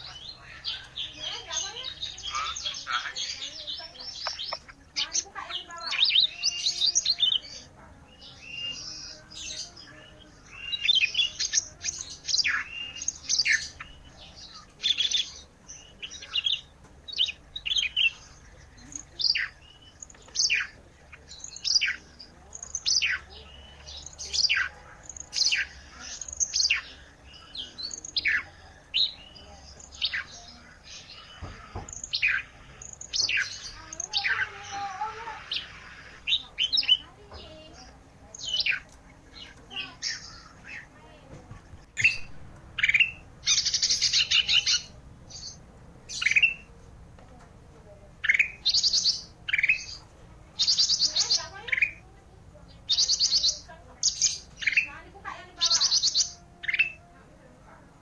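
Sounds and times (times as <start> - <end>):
songbird singing high notes: 0.0 - 37.2, 52.8 - 57.2.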